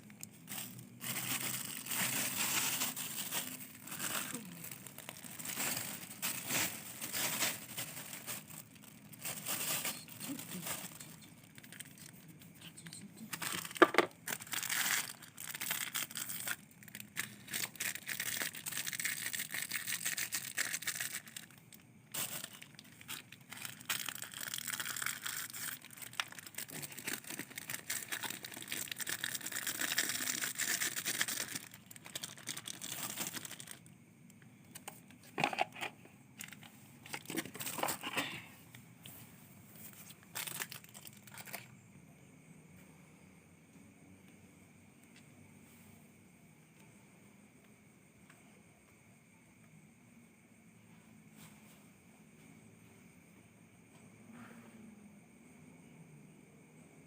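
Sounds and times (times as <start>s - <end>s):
crinkling and rustling: 0.0s - 41.7s.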